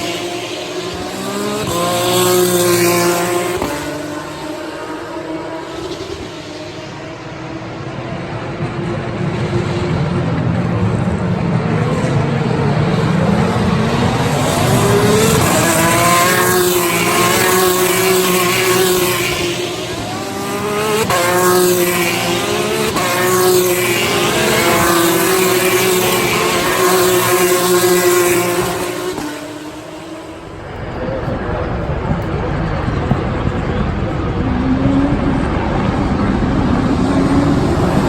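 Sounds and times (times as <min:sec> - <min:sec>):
racing car engines at full throttle: 0:00.0 - 0:38.0.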